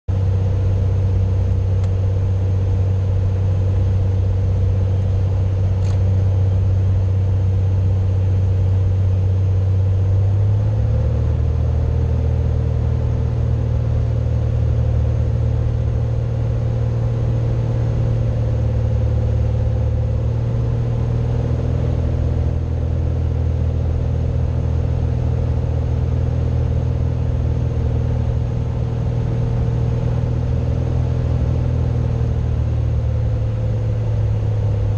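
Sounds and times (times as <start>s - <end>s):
propeller plane engine droning: 0.1s - 34.9s
short click: 5.8s - 6.1s.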